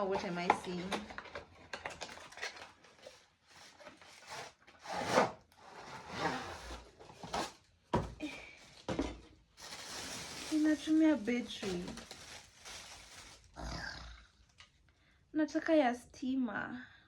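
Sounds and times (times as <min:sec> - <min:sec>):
packaging rubbing and rustling: 0:00.7 - 0:07.8, 0:09.5 - 0:13.6.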